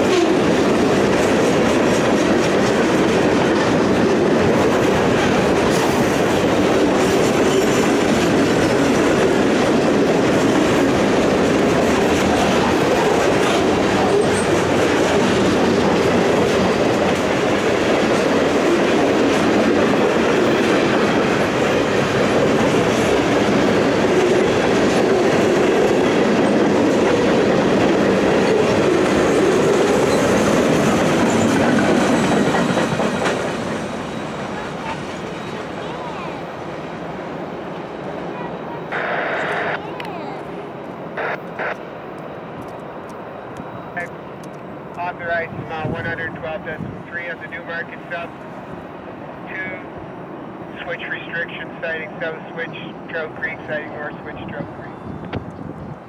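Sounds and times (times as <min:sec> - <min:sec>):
train wheels clattering over rails: 0:00.0 - 0:37.9.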